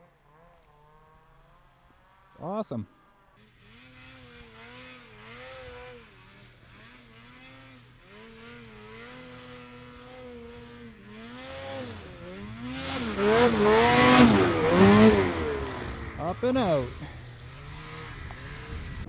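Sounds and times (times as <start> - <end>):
snowmobile engine revving: 3.4 - 19.0.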